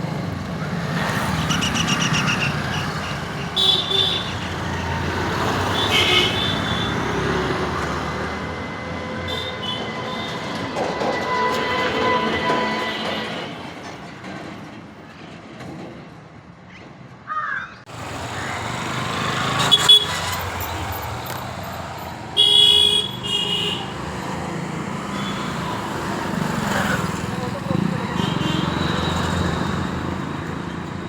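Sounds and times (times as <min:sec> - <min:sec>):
road traffic noise: 0:00.0 - 0:31.0
vehicle horn honking: 0:03.6 - 0:04.7, 0:05.6 - 0:07.4, 0:09.0 - 0:10.6, 0:19.6 - 0:20.4, 0:22.4 - 0:24.2, 0:25.1 - 0:25.9, 0:28.1 - 0:29.0.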